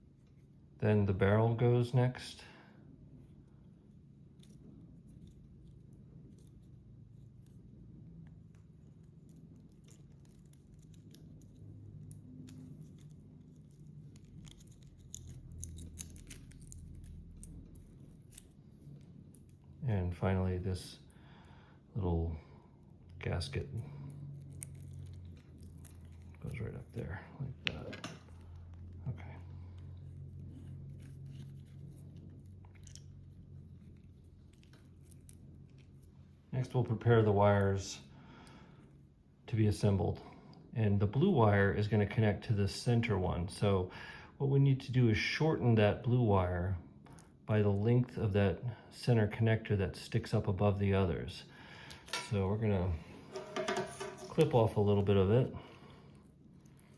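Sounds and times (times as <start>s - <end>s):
low steady hum: 0.0s - 56.9s
clicks and rustles of handling cable: 4.2s - 19.8s, 23.0s - 29.1s, 29.8s - 36.2s, 51.9s - 55.1s.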